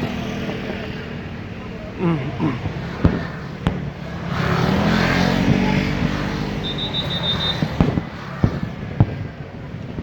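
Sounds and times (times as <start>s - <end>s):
firework bangs: 2.6s - 10.0s
vehicle engine passing by: 2.9s - 6.7s.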